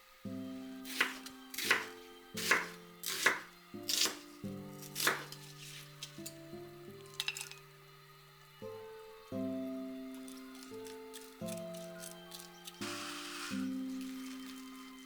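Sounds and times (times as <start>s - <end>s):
soft background music: 0.0s - 15.0s
knife chopping on cutting board: 0.8s - 6.0s.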